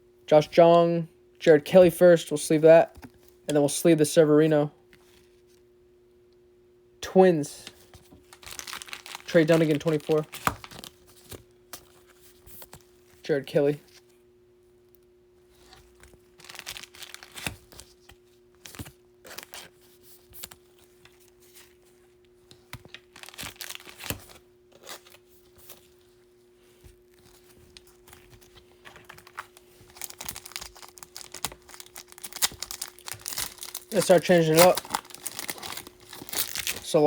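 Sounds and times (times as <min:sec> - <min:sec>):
faint steady hum: 0:00.0 - 0:37.0
plastic card sleeves crinkling: 0:07.6 - 0:14.1, 0:15.5 - 0:37.0.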